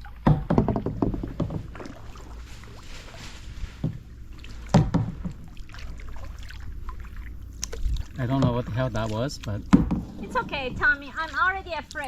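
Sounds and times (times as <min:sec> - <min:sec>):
paddles in water: 0:00.0 - 0:12.0
knocks against boat hull: 0:00.2 - 0:01.9, 0:03.8 - 0:04.1, 0:04.7 - 0:05.5, 0:09.6 - 0:11.2.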